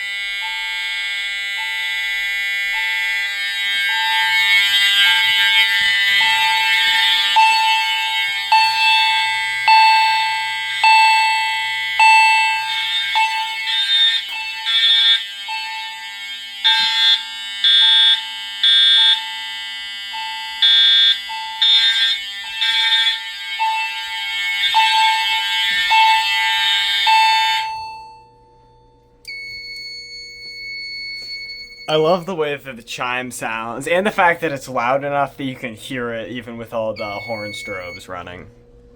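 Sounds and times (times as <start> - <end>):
steady high electronic tone: 0.0 - 28.3, 35.6 - 38.4
fire alarm chime ringing: 0.0 - 32.6, 36.4 - 38.5
buzzing alarm horns: 0.0 - 38.9.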